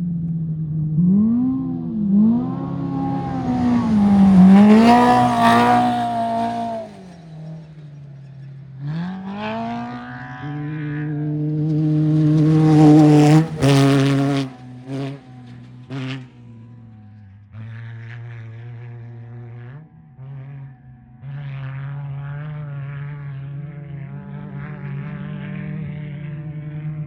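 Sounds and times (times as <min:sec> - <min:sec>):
another race vehicle engine: 0:00.0 - 0:27.0
race vehicle engine passing: 0:00.5 - 0:27.0
engine revving: 0:00.6 - 0:27.0.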